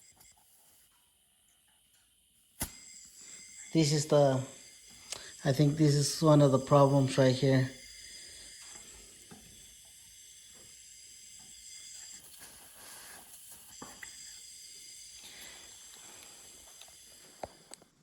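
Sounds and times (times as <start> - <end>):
air hissing from compressor: 2.5 - 18.0.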